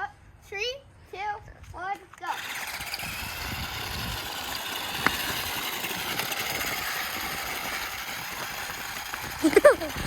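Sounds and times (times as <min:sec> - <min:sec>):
toy car electric motor whirring: 0:02.2 - 0:10.0.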